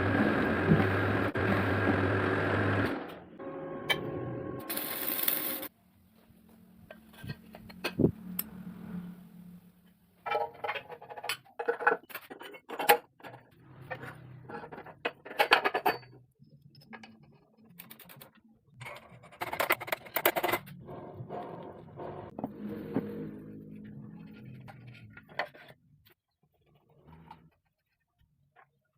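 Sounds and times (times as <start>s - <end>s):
low hum: 6.4s - 10.1s.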